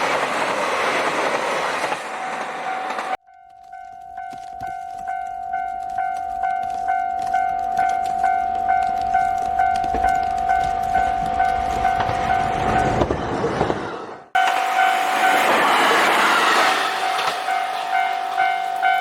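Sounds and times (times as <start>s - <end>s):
approaching train rumble: 0.0s - 3.2s, 8.2s - 19.0s
electronic crossing bell ringing: 2.7s - 13.1s, 14.4s - 15.7s, 17.0s - 19.0s.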